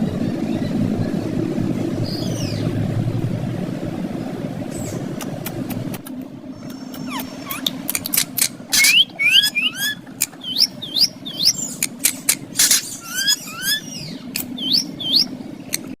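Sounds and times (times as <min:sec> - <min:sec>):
parrot clicks: 0:05.2 - 0:09.0, 0:11.8 - 0:12.8, 0:14.4 - 0:14.6
parrot screeching: 0:08.7 - 0:10.7, 0:12.6 - 0:15.2
parrot whistled chirps: 0:08.7 - 0:11.7, 0:12.6 - 0:15.3.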